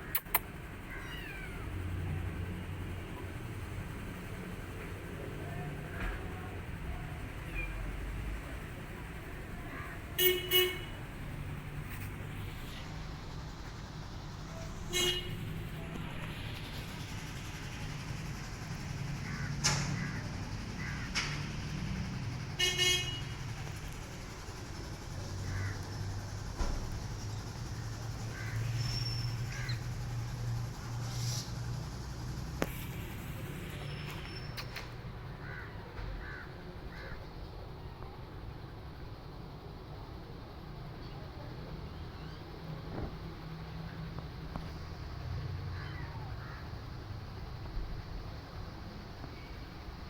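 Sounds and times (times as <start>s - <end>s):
street traffic: 0.0s - 50.0s
car horn tooting: 10.2s - 11.0s, 14.9s - 15.4s, 22.6s - 23.4s.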